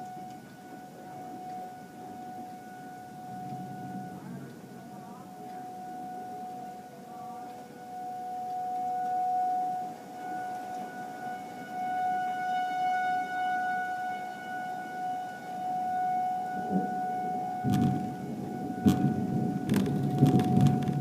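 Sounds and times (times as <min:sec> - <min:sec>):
tornado warning siren: 0:00.0 - 0:21.0
low rushing noise: 0:17.6 - 0:21.0.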